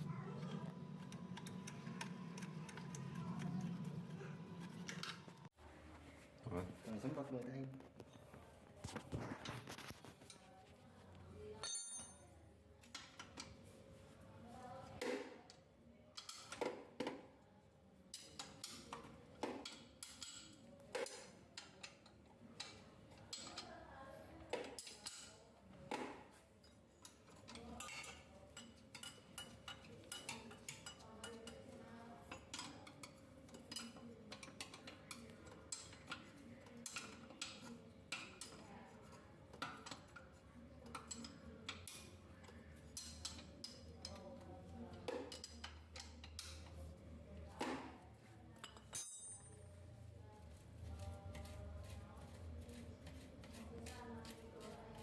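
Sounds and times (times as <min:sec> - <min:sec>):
metal objects clinking: 0:11.6 - 0:12.3, 0:48.6 - 0:49.6.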